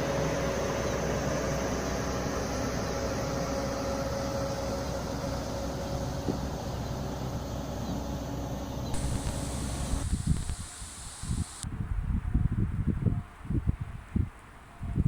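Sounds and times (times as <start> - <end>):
faint steady whine: 8.9 - 11.6.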